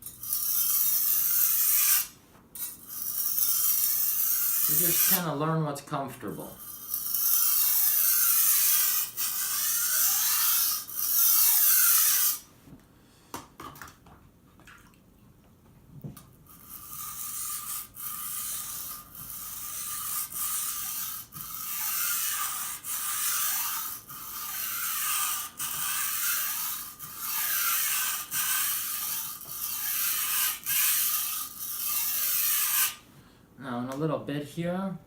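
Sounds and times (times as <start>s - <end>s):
knife grinding on whetstone: 0.0s - 5.4s, 6.5s - 12.4s, 16.5s - 33.0s.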